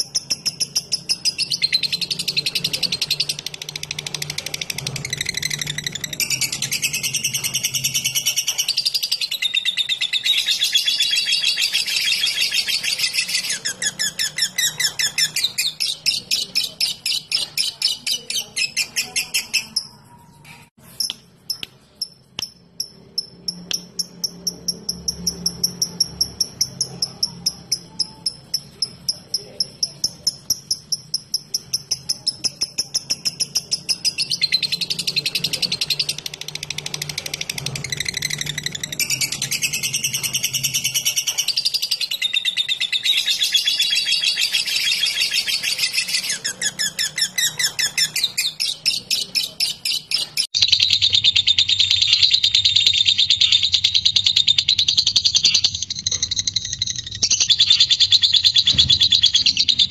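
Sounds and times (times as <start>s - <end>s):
bird chattering in high chirps: 0.0s - 59.9s.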